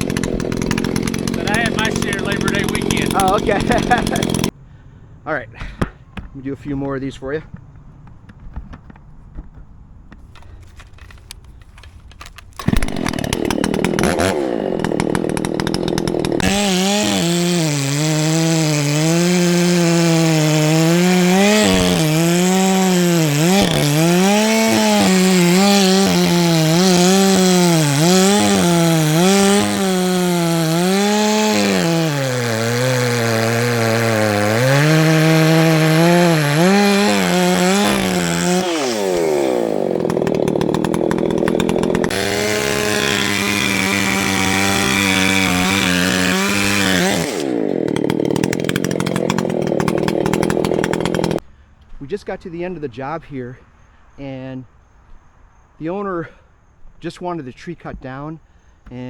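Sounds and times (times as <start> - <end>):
chainsaw cutting wood: 0.0 - 4.6, 11.8 - 51.4.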